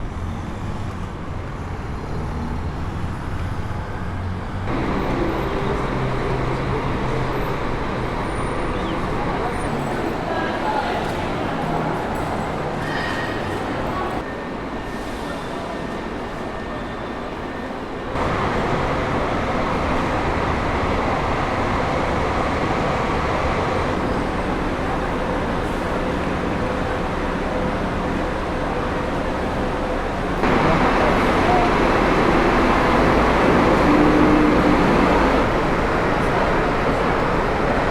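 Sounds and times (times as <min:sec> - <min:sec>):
steady vehicle noise: 0:00.0 - 0:10.3, 0:18.1 - 0:37.9
traffic noise with low hum: 0:00.0 - 0:14.2, 0:17.4 - 0:37.9.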